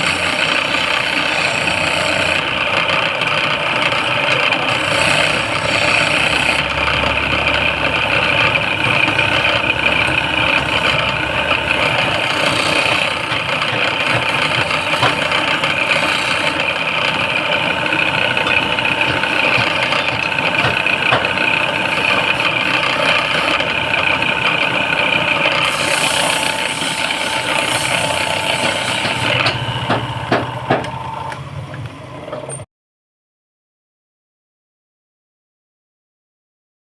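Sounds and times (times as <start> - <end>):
wood lathe motor whine: 0.0 - 32.6
hiss of spinning wood: 14.0 - 16.7, 25.5 - 30.9
sharp knocks: 29.0 - 31.0.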